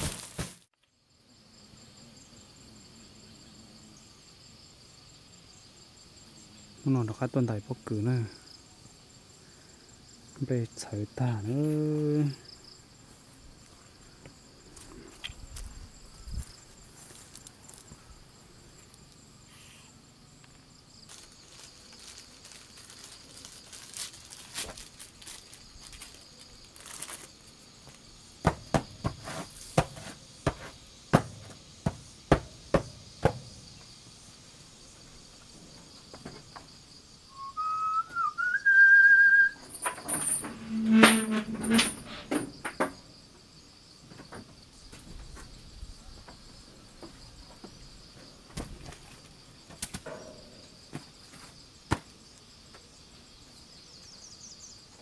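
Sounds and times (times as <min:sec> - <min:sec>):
rustling and knocking: 0:00.0 - 0:00.7, 0:27.9 - 0:34.0, 0:35.0 - 0:36.8, 0:39.6 - 0:43.0
insects trilling: 0:00.0 - 0:55.0
sharp knocks: 0:28.4 - 0:33.6.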